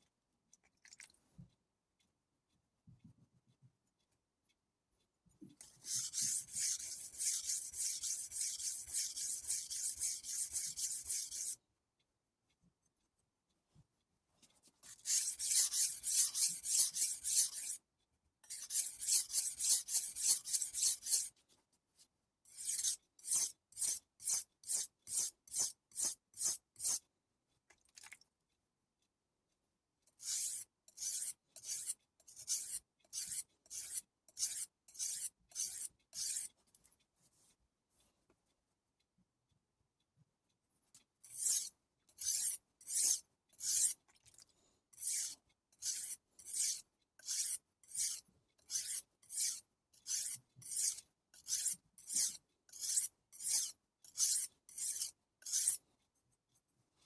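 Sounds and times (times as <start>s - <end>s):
knife blade scraping on whetstone: 5.8s - 11.6s, 14.8s - 17.8s, 18.4s - 21.3s, 22.5s - 27.0s, 30.2s - 36.5s, 41.3s - 43.9s, 45.0s - 55.8s.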